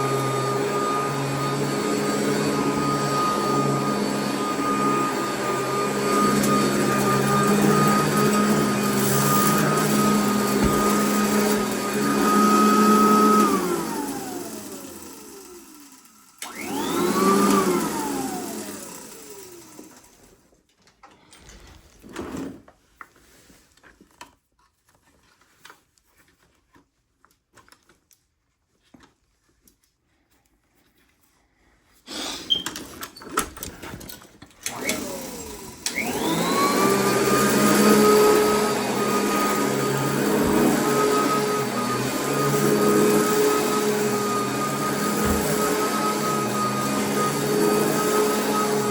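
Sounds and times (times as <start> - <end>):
vacuum cleaner motor whining: 0.0 - 20.4, 34.6 - 48.9.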